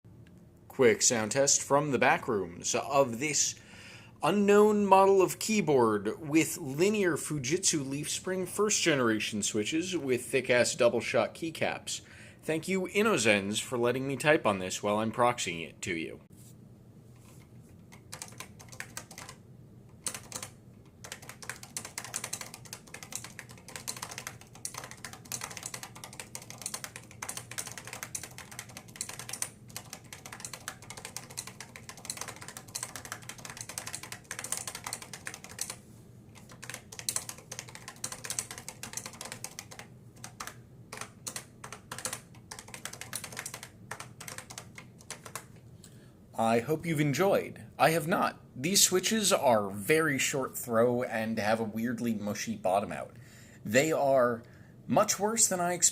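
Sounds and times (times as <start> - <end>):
keyboard typing clatter: 17.9 - 19.4, 20.0 - 35.8, 36.4 - 45.6.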